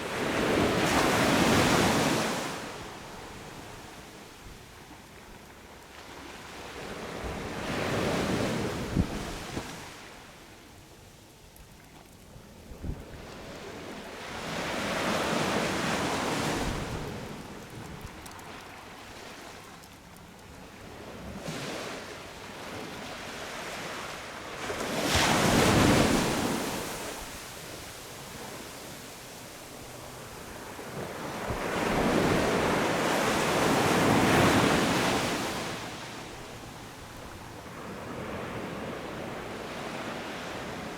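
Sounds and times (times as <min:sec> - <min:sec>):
sea waves breaking on beach: 0:00.0 - 0:04.3, 0:13.1 - 0:40.9
wind on microphone: 0:07.2 - 0:09.8.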